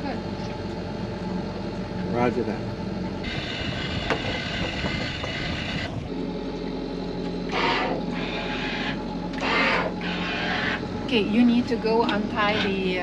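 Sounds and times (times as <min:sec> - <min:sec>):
boat engine running: 0:00.0 - 0:13.0
high whine: 0:00.0 - 0:13.0.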